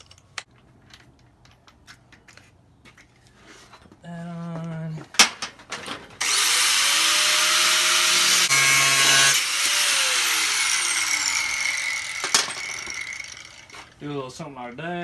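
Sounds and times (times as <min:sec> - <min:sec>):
electric grinder whining: 0:06.2 - 0:14.0
grinder grinding steel: 0:06.2 - 0:14.0.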